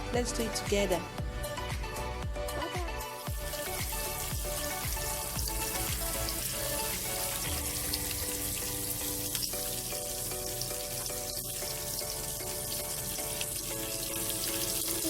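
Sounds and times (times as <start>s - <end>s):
background music: 0.0s - 15.0s
food sizzling in a frying pan: 3.2s - 15.0s.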